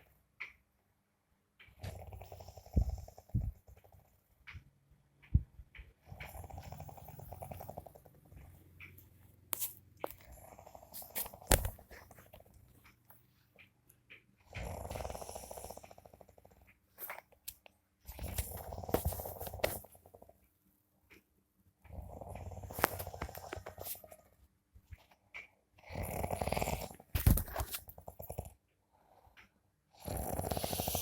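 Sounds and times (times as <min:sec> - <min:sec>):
rattling snores: 0:01.7 - 0:04.2, 0:06.0 - 0:08.6, 0:10.1 - 0:12.4, 0:14.4 - 0:16.8, 0:18.1 - 0:20.4, 0:21.8 - 0:24.1, 0:25.8 - 0:31.0.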